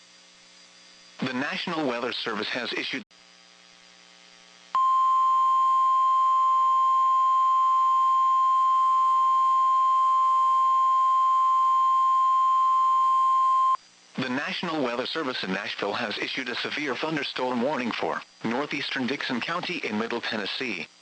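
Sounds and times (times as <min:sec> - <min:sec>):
faint hum: 0:00.0 - 0:21.0
steady warning alarm tone: 0:04.8 - 0:13.8.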